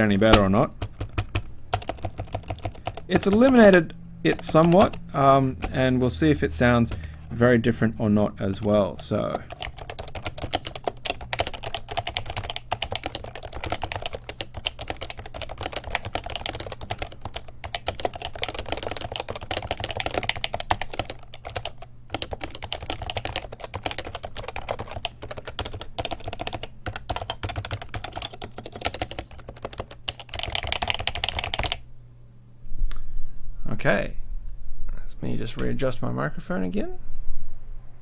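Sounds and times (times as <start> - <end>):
typing on keyboard: 0.0 - 6.1, 8.6 - 31.8.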